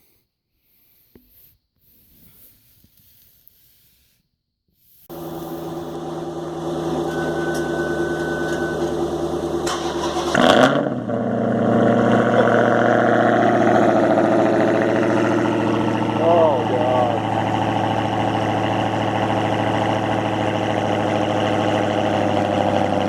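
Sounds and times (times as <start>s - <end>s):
car engine idling: 5.1s - 23.0s
engine revving burst: 5.1s - 23.0s.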